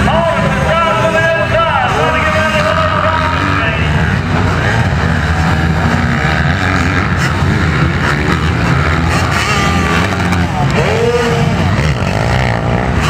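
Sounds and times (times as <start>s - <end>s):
dirt bike engines revving: 0.0s - 13.0s.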